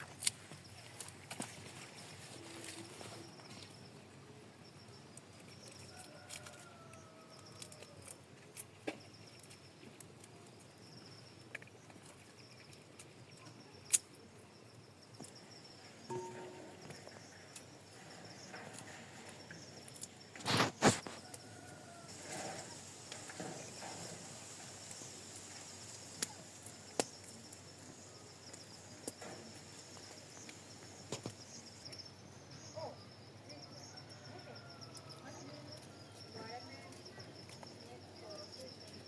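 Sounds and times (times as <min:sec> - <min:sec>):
insects chirping: 0:00.0 - 0:39.0.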